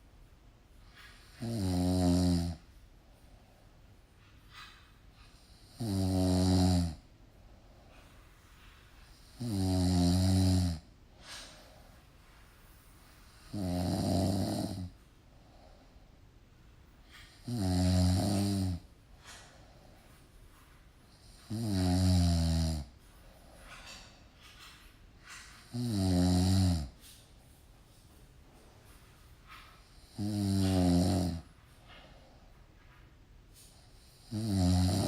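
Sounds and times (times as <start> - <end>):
person snoring: 1.4 - 2.6, 5.6 - 7.0, 9.4 - 10.8, 13.5 - 14.9, 17.4 - 18.8, 21.5 - 22.9, 25.7 - 27.0, 30.0 - 31.5, 34.1 - 35.0.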